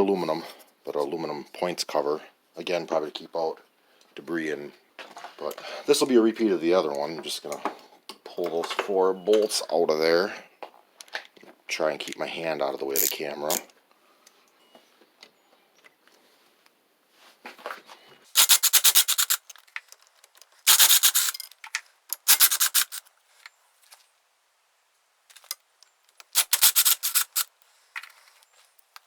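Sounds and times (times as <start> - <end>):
ratchet wrench clicking: 18.4 - 23.1, 25.3 - 25.6, 26.2 - 27.6.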